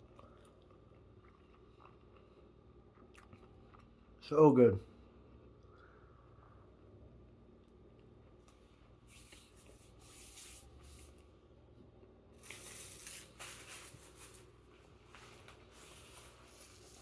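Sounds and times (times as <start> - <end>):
soft chewing: 0.0 - 4.2, 7.6 - 17.0
rustle of handling flatbread: 8.4 - 11.4, 12.3 - 17.0.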